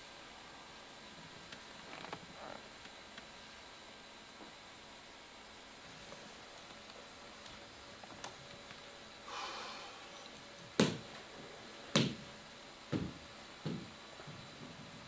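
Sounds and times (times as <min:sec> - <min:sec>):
drawn-out throat sound: 0:09.3 - 0:10.4.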